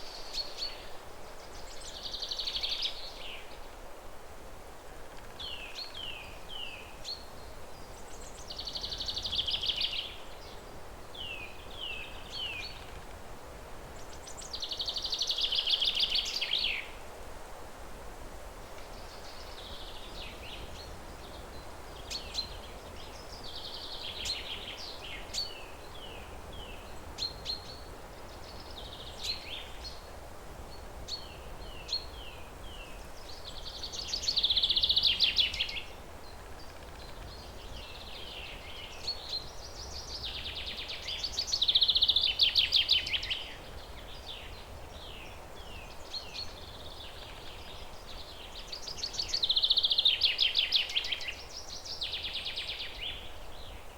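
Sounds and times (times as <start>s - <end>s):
songbirds singing: 0.0s - 3.8s, 4.9s - 17.1s, 18.6s - 53.9s.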